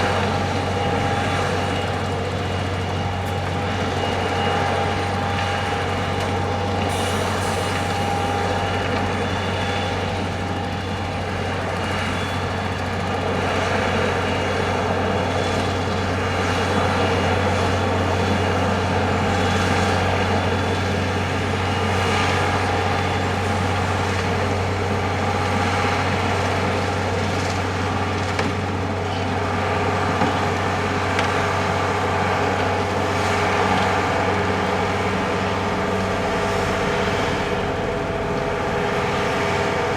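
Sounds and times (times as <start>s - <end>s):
heavy vehicle engine running: 0.0s - 39.9s.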